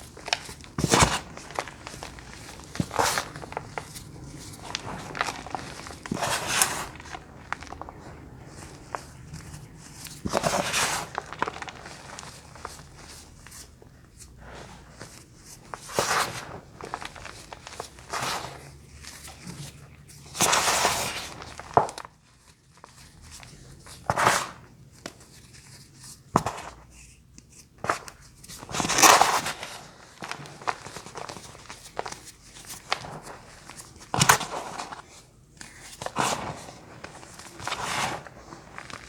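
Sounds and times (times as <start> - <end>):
small clicks and crackles: 0.0 - 13.6
crunching: 0.0 - 13.7, 15.7 - 18.6, 28.7 - 39.0.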